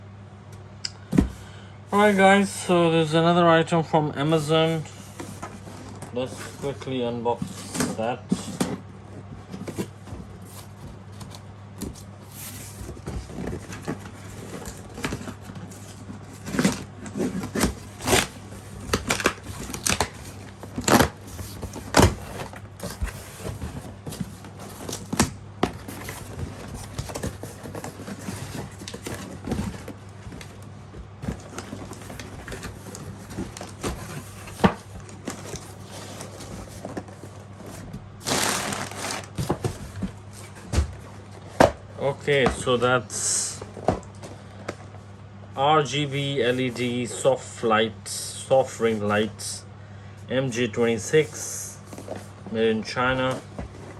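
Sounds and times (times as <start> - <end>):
steady low hum: 0.0 - 53.9
packaging rustling: 4.3 - 42.8
cardboard box being opened: 4.7 - 42.7.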